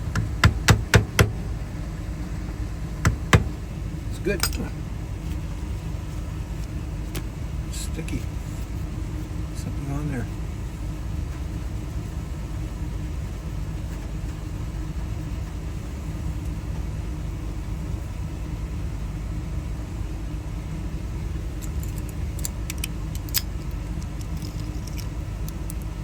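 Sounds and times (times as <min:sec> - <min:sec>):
steady low rumble: 0:00.0 - 0:13.8
small metallic clicks: 0:21.6 - 0:26.0.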